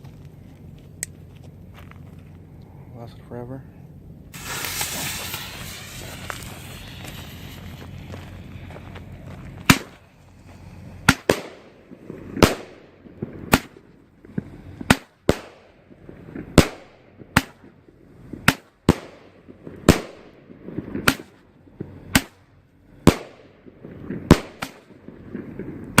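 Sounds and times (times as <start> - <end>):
fireworks popping: 4.3 - 10.2, 11.0 - 15.6, 23.1 - 26.0
fireworks hissing: 4.3 - 11.5.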